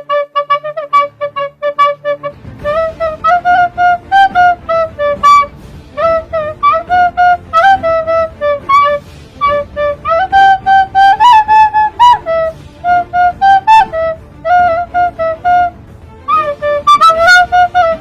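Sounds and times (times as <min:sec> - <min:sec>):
flute melody: 0:00.0 - 0:18.0
hip-hop beat: 0:00.5 - 0:18.0.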